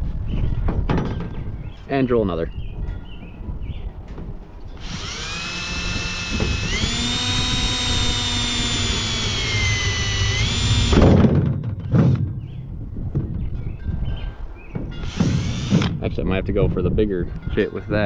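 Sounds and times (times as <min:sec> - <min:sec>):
cordless drill motor whine: 0:04.8 - 0:11.1, 0:15.0 - 0:15.9.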